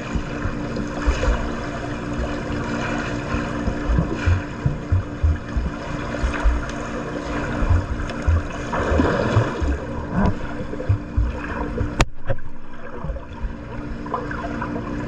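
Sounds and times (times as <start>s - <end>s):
low thumps: 0.0s - 1.5s, 3.3s - 12.2s
faint hum: 0.0s - 15.0s
water churning and sloshing: 0.0s - 15.0s.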